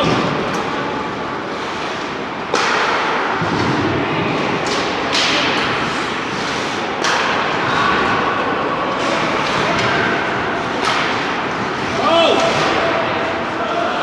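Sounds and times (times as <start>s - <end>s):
arena noise: 0.0s - 14.0s
sharp puck hits: 1.6s - 3.6s, 4.6s - 5.7s.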